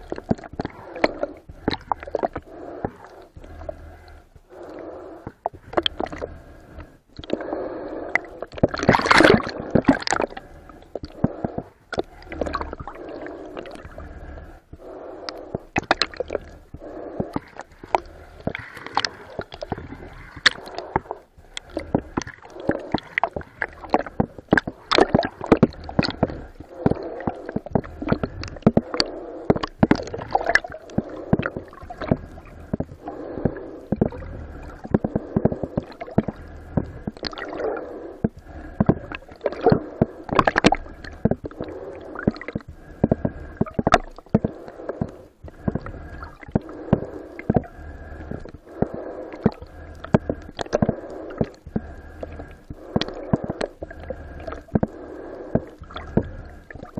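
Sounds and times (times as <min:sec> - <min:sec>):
water gurgling and sloshing: 0:00.0 - 0:56.9.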